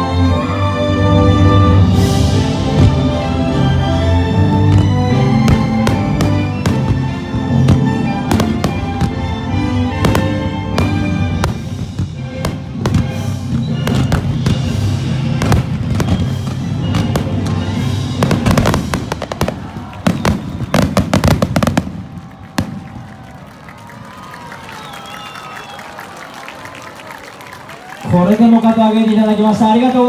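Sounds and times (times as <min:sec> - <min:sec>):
orchestral music from loudspeakers: 0:00.0 - 0:19.5
fireworks bursting and crackling: 0:01.9 - 0:25.8.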